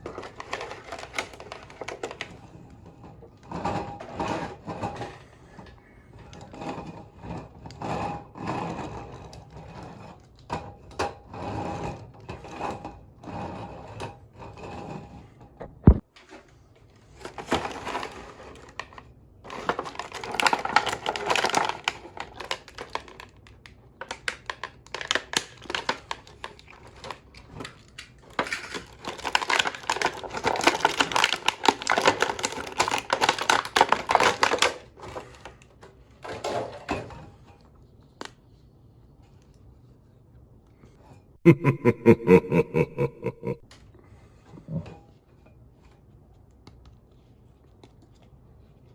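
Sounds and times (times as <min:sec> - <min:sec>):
plastic packaging crinkling: 0:00.1 - 0:02.3, 0:19.5 - 0:23.4, 0:24.0 - 0:27.2, 0:28.4 - 0:34.8.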